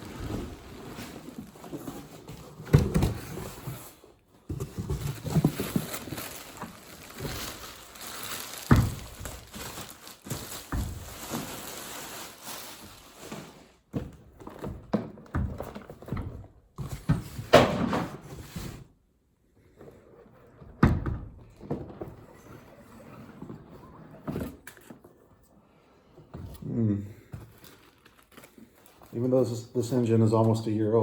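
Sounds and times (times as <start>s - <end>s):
cardboard box rustling: 0.0s - 13.8s
box thumps: 4.5s - 7.4s.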